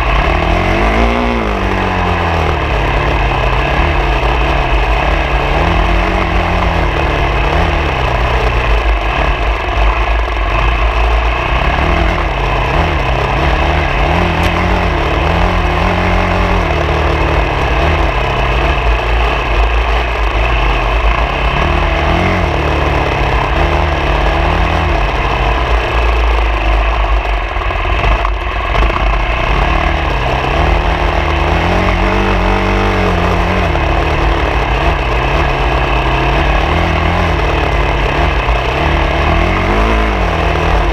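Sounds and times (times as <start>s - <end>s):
motorcycle engine revving: 0.0s - 40.9s
wind and terrain noise: 0.0s - 40.9s.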